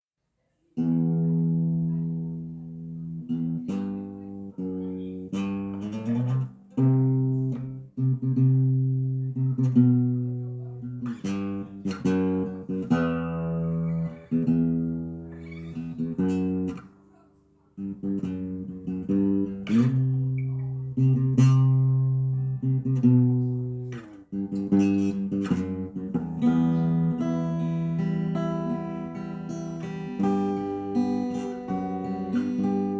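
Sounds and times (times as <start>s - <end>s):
acoustic guitar fingerstyle: 0.8s - 32.9s.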